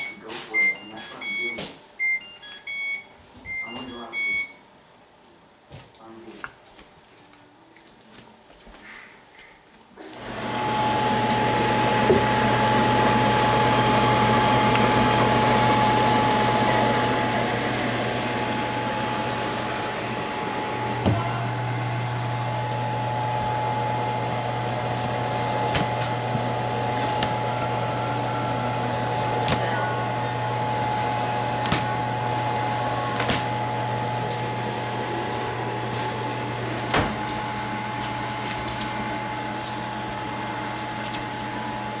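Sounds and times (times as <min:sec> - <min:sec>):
microwave humming and whining: 0:10.0 - 0:42.0
fan noise: 0:10.1 - 0:42.0.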